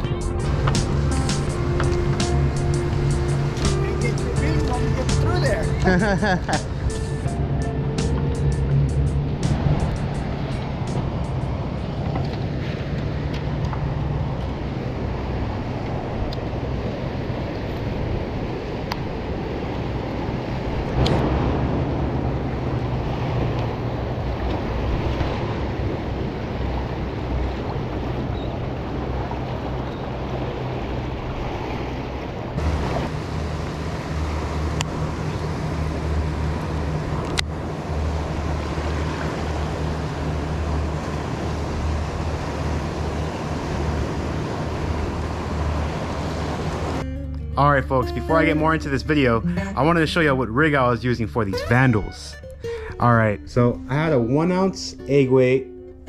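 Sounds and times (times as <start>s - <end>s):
wind buffeting microphone: 0.0s - 47.0s
waves washing against rocks: 9.5s - 47.0s.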